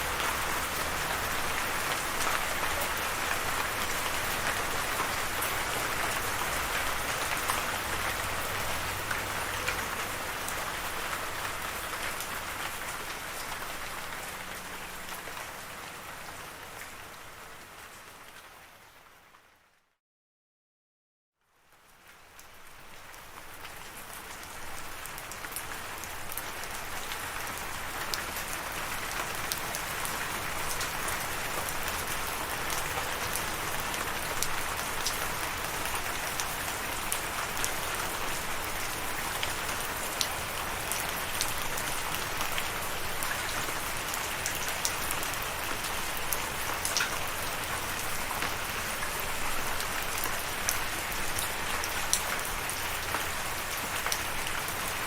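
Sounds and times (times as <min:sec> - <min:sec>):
steady rain pattering: 0:00.0 - 0:19.9, 0:21.4 - 0:55.0.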